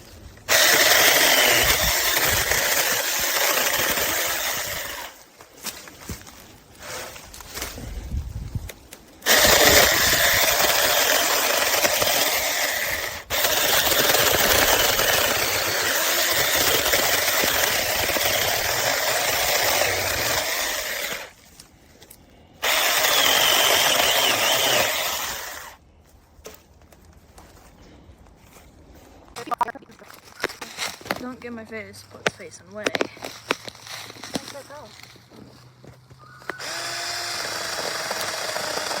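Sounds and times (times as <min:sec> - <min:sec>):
mini chainsaw cutting wood: 0:00.4 - 0:05.2, 0:09.2 - 0:21.4, 0:22.6 - 0:25.8, 0:36.4 - 0:39.0.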